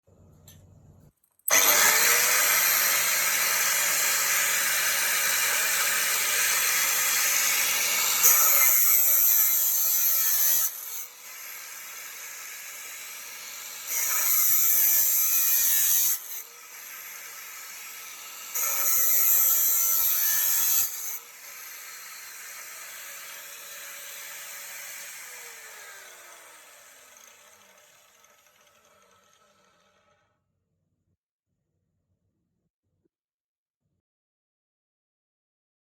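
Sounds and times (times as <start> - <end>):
angle grinder whining: 1.5 - 30.2
grinder cutting workpiece: 1.5 - 30.3.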